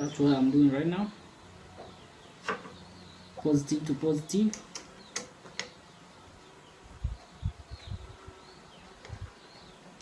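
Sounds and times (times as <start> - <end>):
birds chirping: 0.0 - 10.0
wires clicking into terminals: 4.4 - 5.8.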